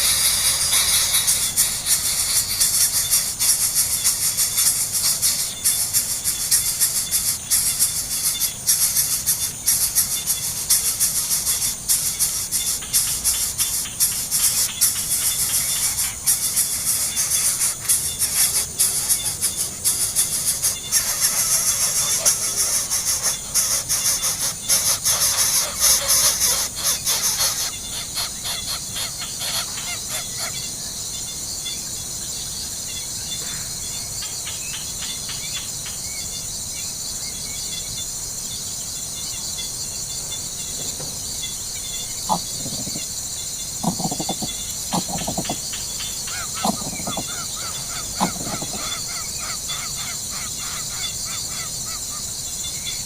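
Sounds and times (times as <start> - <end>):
steady high-pitched hiss: 0.0 - 53.0
short bird calls: 42.2 - 43.1, 43.8 - 52.2.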